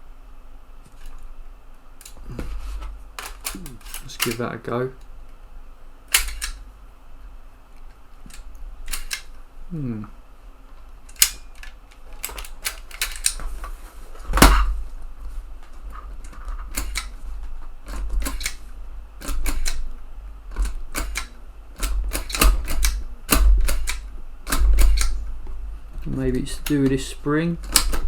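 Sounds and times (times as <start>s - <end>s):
floppy drive eject clicks: 6.1s - 6.6s, 8.3s - 9.3s, 16.3s - 17.2s, 19.2s - 19.9s, 20.5s - 25.2s, 27.6s - 28.0s.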